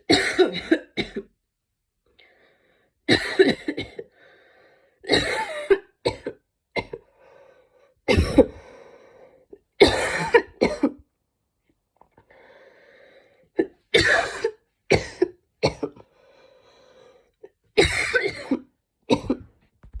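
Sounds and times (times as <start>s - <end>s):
woman coughing: 0.0s - 1.3s, 3.1s - 4.0s, 5.1s - 7.0s, 8.1s - 8.6s, 9.8s - 11.0s, 14.0s - 16.0s, 17.8s - 19.5s
drawn-in breath: 2.2s - 2.9s, 4.2s - 5.0s, 7.1s - 7.9s, 8.5s - 9.5s, 12.3s - 13.5s, 16.1s - 17.4s.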